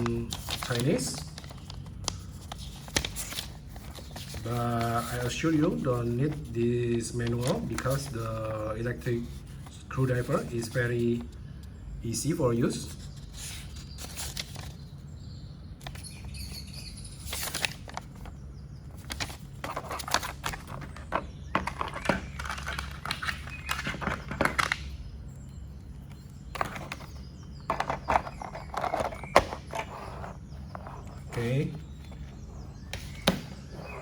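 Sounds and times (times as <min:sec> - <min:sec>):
packaging rustling and clicking: 0:00.0 - 0:05.0, 0:17.2 - 0:25.1, 0:26.1 - 0:34.0
steady low hum: 0:00.0 - 0:34.0.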